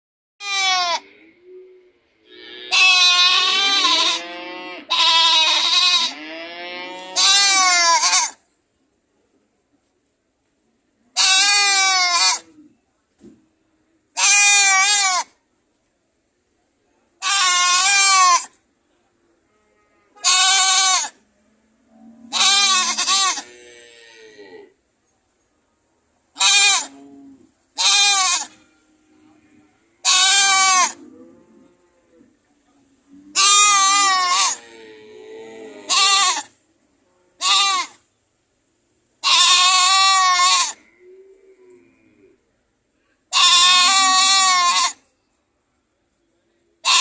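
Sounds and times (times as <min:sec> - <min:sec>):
goat screaming: 0:00.4 - 0:01.0, 0:02.7 - 0:04.2, 0:04.9 - 0:06.2, 0:07.0 - 0:08.4, 0:11.2 - 0:12.5, 0:14.2 - 0:15.3, 0:17.2 - 0:18.6, 0:20.2 - 0:21.2, 0:22.3 - 0:23.5, 0:26.4 - 0:26.9, 0:27.8 - 0:28.6, 0:30.0 - 0:31.0, 0:33.4 - 0:34.6, 0:35.8 - 0:36.5, 0:37.4 - 0:38.0, 0:39.2 - 0:40.8, 0:43.3 - 0:45.0
goat lower call: 0:02.7 - 0:06.2, 0:11.2 - 0:12.6, 0:20.2 - 0:21.2, 0:22.3 - 0:23.5, 0:26.4 - 0:27.0, 0:27.8 - 0:28.6, 0:30.0 - 0:31.0, 0:33.3 - 0:34.7, 0:35.8 - 0:36.5, 0:39.2 - 0:40.9, 0:43.3 - 0:45.0.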